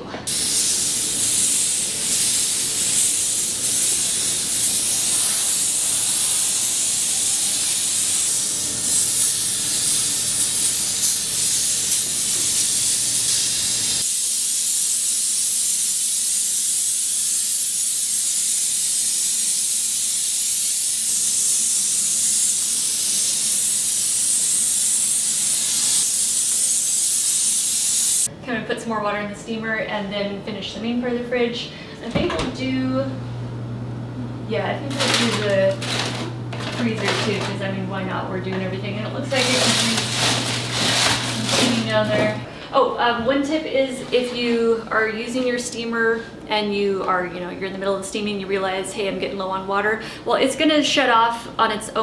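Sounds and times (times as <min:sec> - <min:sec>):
steam cleaner hissing: 0:00.3 - 0:28.3, 0:34.9 - 0:37.6, 0:39.2 - 0:42.5.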